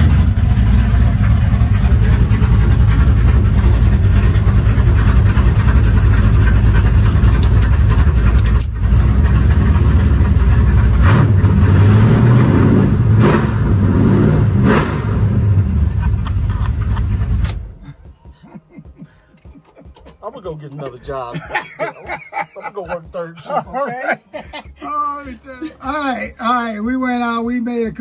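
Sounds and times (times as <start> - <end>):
car engine accelerating: 0.0 - 18.1.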